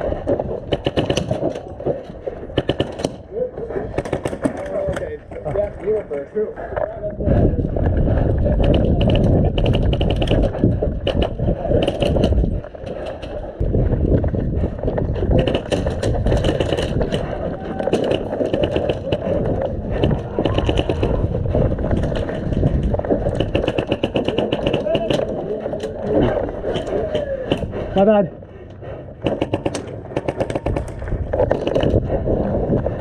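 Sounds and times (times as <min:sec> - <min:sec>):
camera handling rumble: 0:07.8 - 0:27.7, 0:29.7 - 0:32.8.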